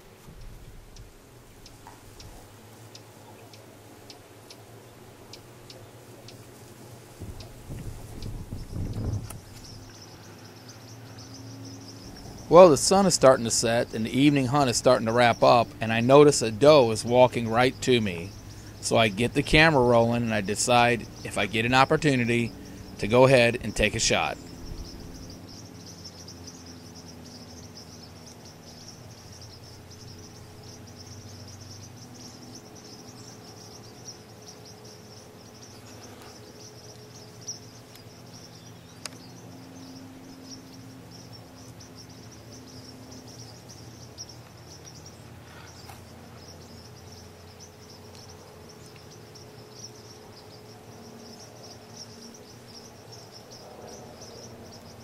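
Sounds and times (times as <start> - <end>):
crickets chirping: 0.0 - 55.0
faint ticks: 0.2 - 4.7, 5.3 - 6.5, 33.6 - 39.4, 43.3 - 50.7.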